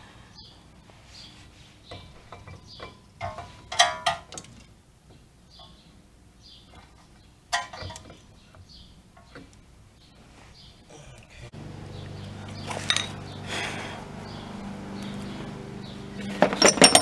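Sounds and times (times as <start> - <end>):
metal tools clinking and clanking: 1.9 - 4.7, 12.8 - 13.2, 16.2 - 17.0.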